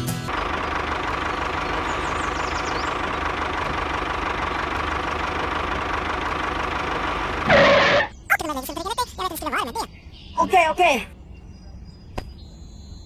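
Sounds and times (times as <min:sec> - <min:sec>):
small engine running: 0:00.0 - 0:08.1.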